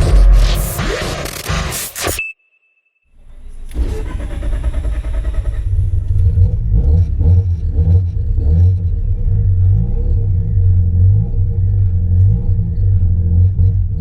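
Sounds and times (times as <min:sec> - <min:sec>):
rotary engine rumbling at low revs: 0:03.2 - 0:14.0.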